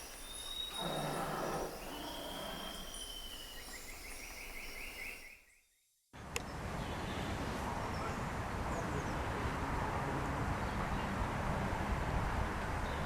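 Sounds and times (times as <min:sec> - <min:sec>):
bird whistling and trilling: 0:00.0 - 0:05.4
outdoor background noise: 0:00.0 - 0:05.5, 0:06.1 - 0:13.0
rumbling background noise: 0:06.2 - 0:13.0.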